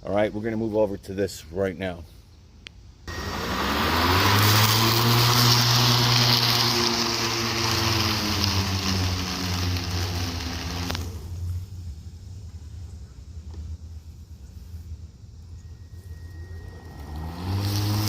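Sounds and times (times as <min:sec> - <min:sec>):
electric lawn mower whine: 0:03.1 - 0:12.8, 0:15.4 - 0:18.0.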